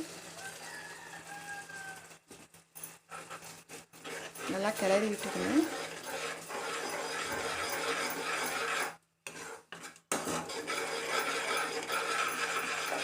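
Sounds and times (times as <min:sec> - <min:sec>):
spoon scraping a pan: 0:02.8 - 0:13.0.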